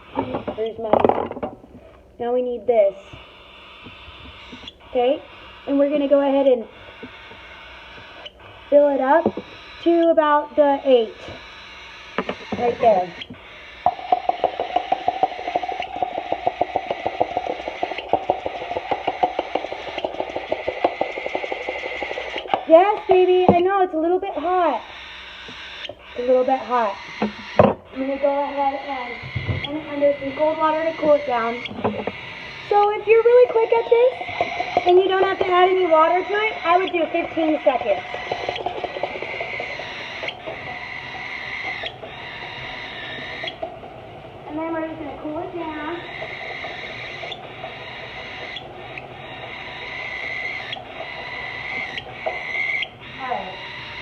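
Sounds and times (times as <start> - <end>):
rapid even ticking: 0.0 - 54.0
baby cockatiel hissing calls: 3.1 - 5.8, 6.7 - 14.1, 24.8 - 32.8, 38.2 - 43.6, 45.9 - 48.7.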